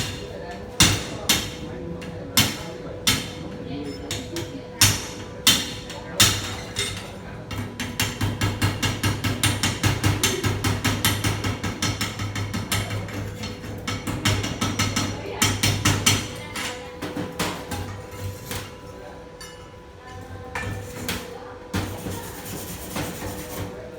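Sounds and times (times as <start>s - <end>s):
hammer striking metal: 4.1s - 16.6s.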